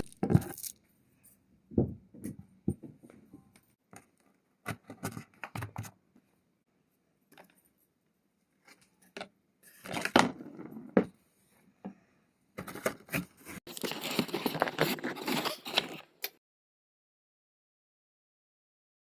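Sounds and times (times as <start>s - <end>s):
crinkling: 12.6s - 16.3s.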